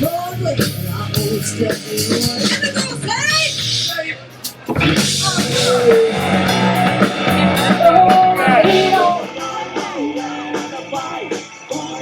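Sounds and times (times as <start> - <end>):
live rock band playing: 0.0 - 12.0
person singing: 5.0 - 12.0.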